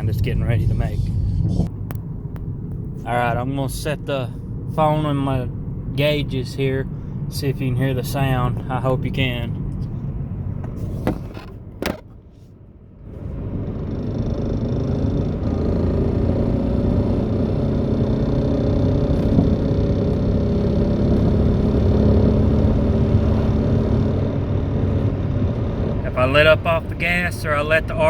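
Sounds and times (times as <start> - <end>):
road noise: 0.0 - 28.0
car engine accelerating: 13.0 - 28.0.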